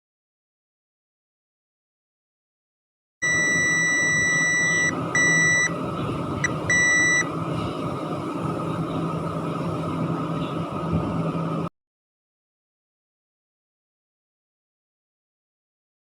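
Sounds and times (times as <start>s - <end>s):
multimeter beeps: 3.2s - 5.8s, 6.4s - 7.3s.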